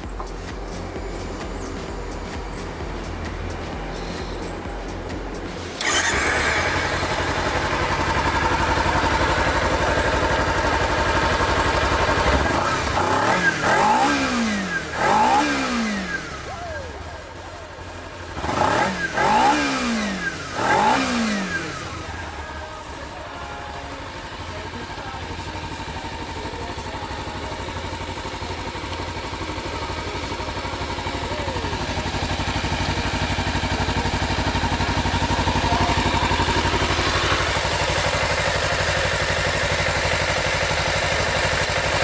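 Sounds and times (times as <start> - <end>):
motorcycle engine idling: 0.0 - 42.0
motorcycle throttle blips: 4.2 - 17.2.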